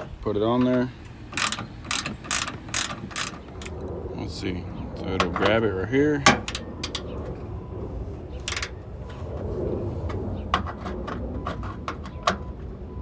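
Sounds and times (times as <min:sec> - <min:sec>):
low steady rumble: 0:00.0 - 0:13.0
ratchet clicking: 0:00.6 - 0:03.8, 0:06.3 - 0:07.1, 0:08.4 - 0:08.8.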